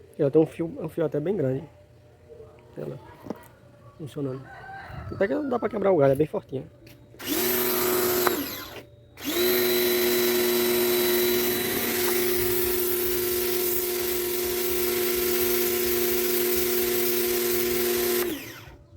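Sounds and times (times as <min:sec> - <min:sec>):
pressure washer humming and hissing: 0:07.2 - 0:18.8.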